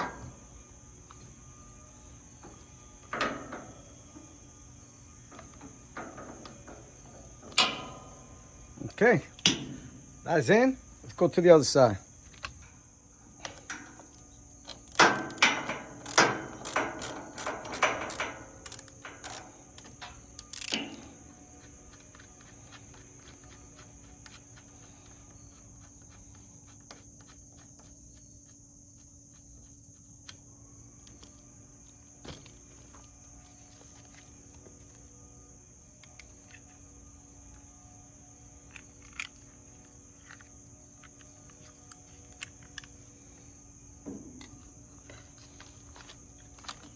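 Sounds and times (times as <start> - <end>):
cricket chirring: 0.0 - 46.9.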